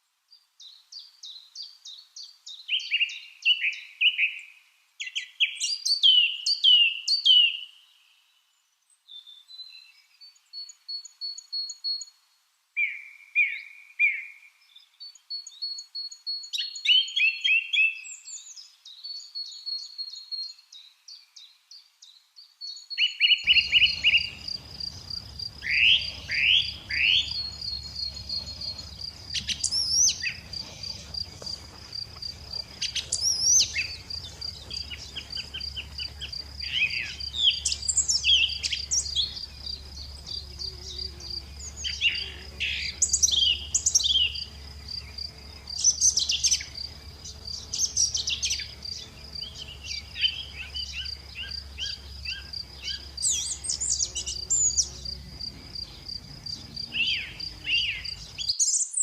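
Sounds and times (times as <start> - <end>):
lovebirds chirping: 23.0 - 59.0.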